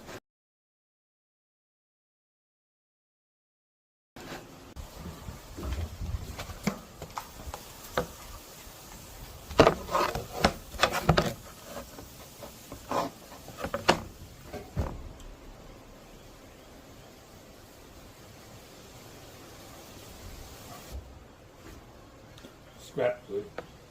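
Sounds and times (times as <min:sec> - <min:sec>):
light wood rubbing: 0:04.2 - 0:15.4.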